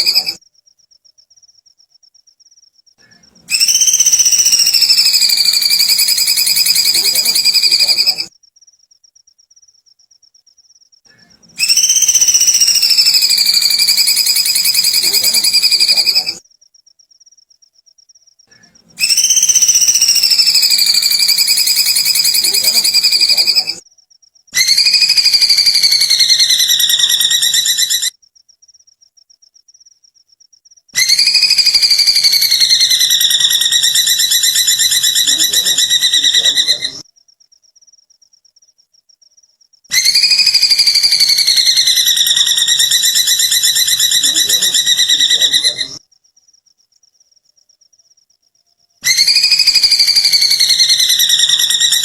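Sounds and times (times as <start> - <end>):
bird trilled call: 3.5 - 8.3, 11.6 - 16.4, 19.0 - 23.8, 24.6 - 28.1, 39.9 - 46.0, 49.0 - 52.0.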